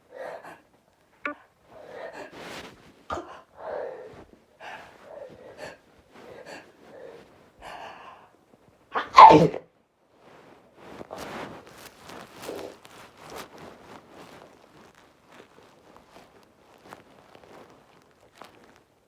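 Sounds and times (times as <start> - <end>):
catching breaths: 0.0 - 9.2
loud sneeze: 9.0 - 9.6.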